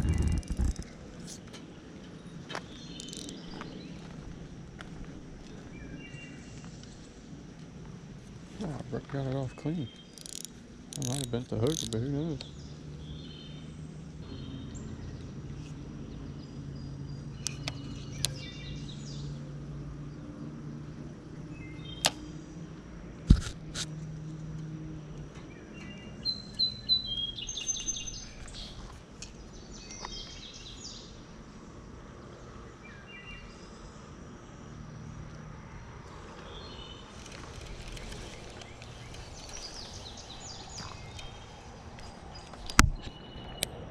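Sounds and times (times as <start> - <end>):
birds chirping: 0.0 - 7.4, 8.6 - 23.2, 25.1 - 43.9
outdoor background noise: 0.0 - 43.9
sharp clicks: 10.0 - 12.5.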